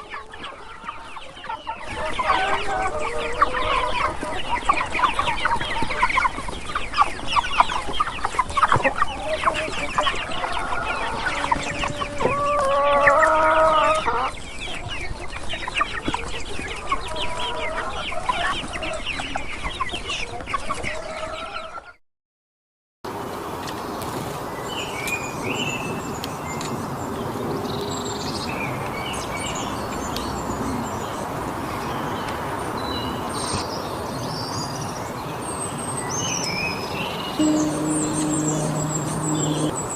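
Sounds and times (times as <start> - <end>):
hens clucking: 0.0 - 14.9
small birds chirping: 23.2 - 39.9.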